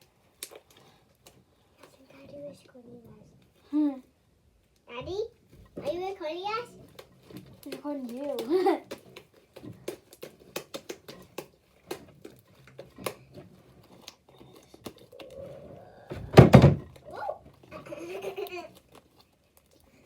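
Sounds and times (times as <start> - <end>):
small clicks and taps: 6.8 - 15.1
loud thump: 16.1 - 16.9.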